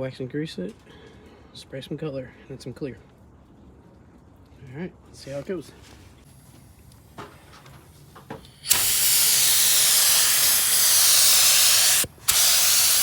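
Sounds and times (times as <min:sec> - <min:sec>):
paint spray gun hissing: 0:08.5 - 0:13.0.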